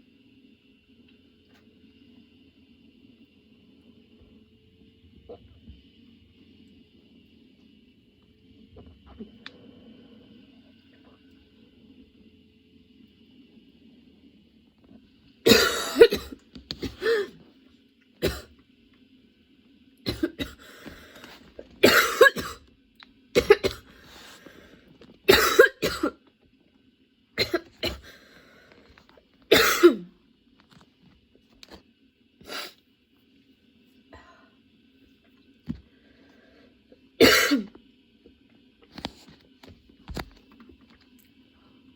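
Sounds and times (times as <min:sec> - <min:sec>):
woman coughing: 0:15.5 - 0:17.4, 0:18.2 - 0:18.5, 0:20.1 - 0:20.6, 0:21.8 - 0:22.6, 0:23.4 - 0:23.9, 0:25.3 - 0:26.2, 0:27.4 - 0:28.2, 0:29.5 - 0:30.1, 0:37.2 - 0:37.7.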